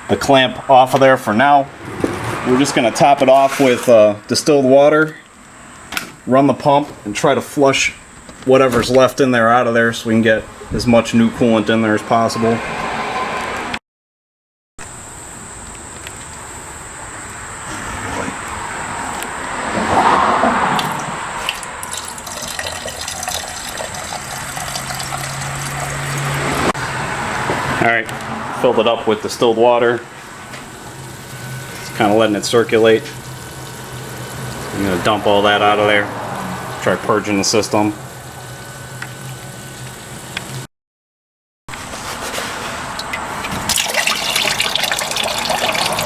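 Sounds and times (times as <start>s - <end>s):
coolant pump humming: 0.0s - 12.3s, 20.7s - 40.7s, 42.8s - 46.0s
water pouring and gurgling: 20.7s - 26.7s, 43.0s - 46.0s.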